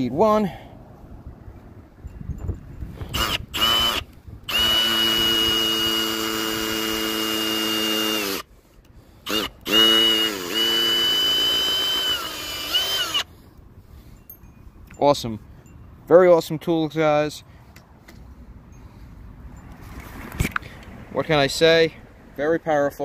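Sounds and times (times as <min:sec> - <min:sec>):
cordless drill motor whining: 0:03.0 - 0:13.4.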